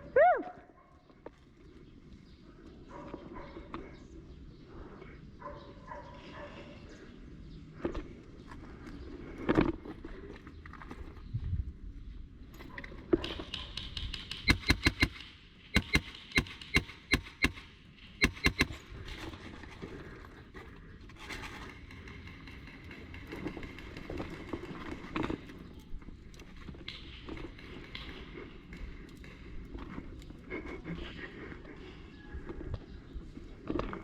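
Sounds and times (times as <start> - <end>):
airsoft gun shots: 13.2 - 18.9.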